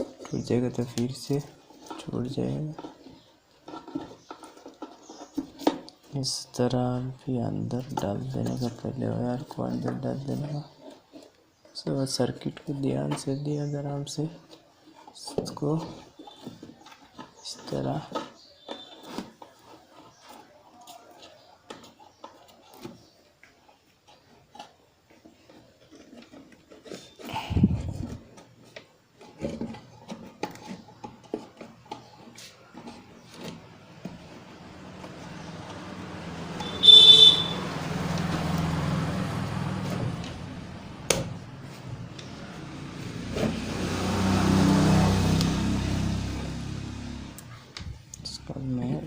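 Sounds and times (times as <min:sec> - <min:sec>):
parts being handled: 0:00.0 - 0:46.3
vehicle engine revving: 0:33.7 - 0:47.6
horn honk: 0:36.6 - 0:38.2.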